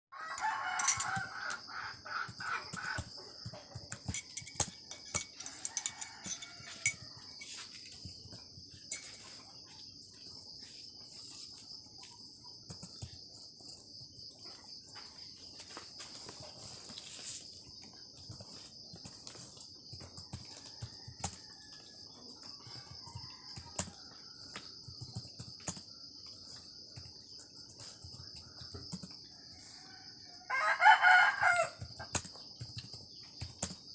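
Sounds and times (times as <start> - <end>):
rooster crowing: 0.1 - 3.0, 5.2 - 7.2, 29.4 - 31.8
insects buzzing: 0.2 - 20.3.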